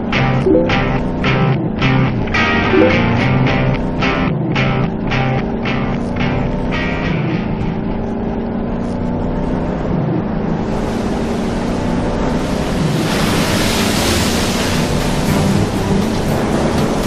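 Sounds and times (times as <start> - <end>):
background music with held tones: 0.0 - 7.7
rushing noise like wind: 9.6 - 17.0.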